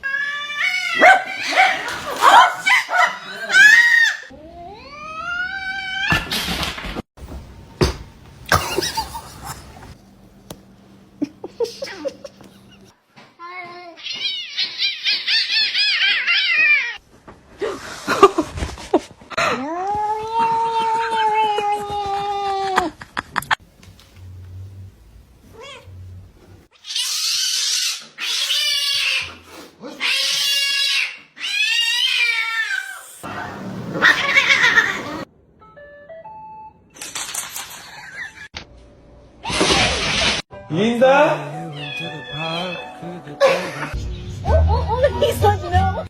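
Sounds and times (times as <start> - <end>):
cat meowing: 41.7 - 42.9.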